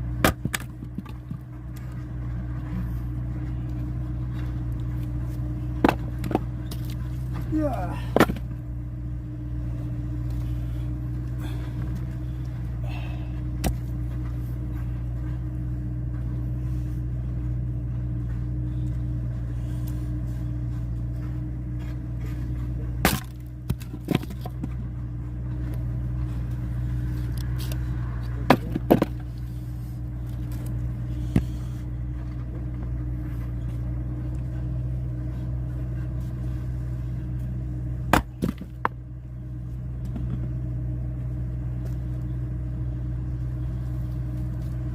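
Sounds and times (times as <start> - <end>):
small engine droning: 0.0 - 44.9
sharp cracks and knocks: 0.2 - 1.9, 13.6 - 13.9, 23.0 - 24.8.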